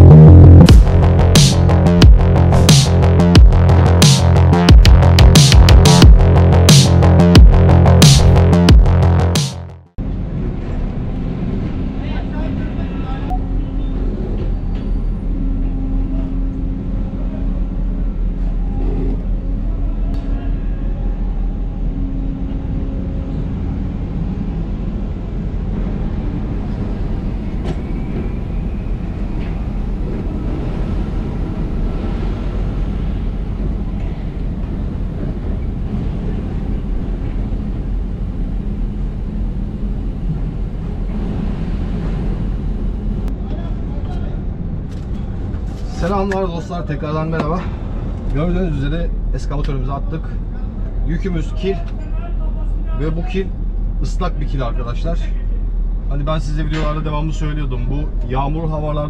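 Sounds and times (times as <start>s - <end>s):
diesel engine humming: 0.0s - 20.1s, 20.8s - 46.3s.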